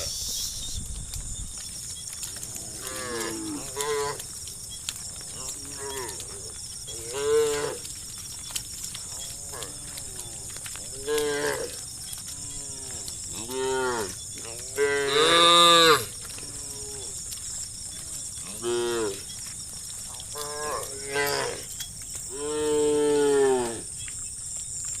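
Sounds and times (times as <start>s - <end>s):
cattle mooing: 5.2s - 7.9s, 9.2s - 17.2s.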